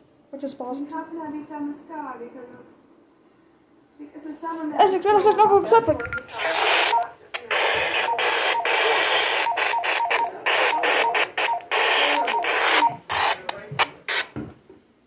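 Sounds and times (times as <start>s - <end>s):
radio static hiss: 6.0s - 14.5s.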